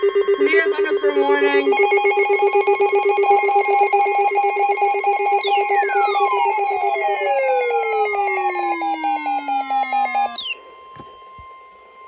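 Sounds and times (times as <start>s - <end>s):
higher pulsing electronic tone: 0.0s - 10.7s
low trilling electronic tone: 1.3s - 10.7s.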